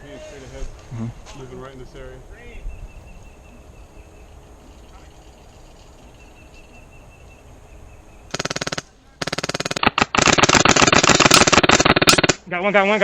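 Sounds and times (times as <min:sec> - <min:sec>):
airsoft guns firing full-auto: 0:08.3 - 0:12.4.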